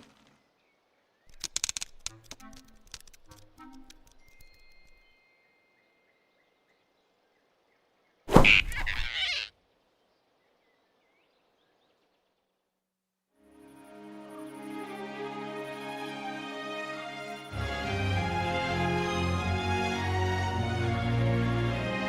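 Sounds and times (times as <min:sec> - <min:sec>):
music: 0:02.1 - 0:05.5, 0:13.4 - 0:22.0.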